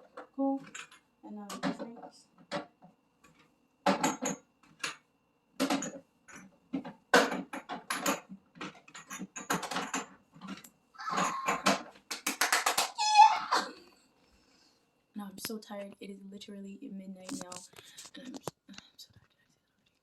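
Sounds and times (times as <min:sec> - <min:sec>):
items clattering and knocking: 0:00.0 - 0:13.0.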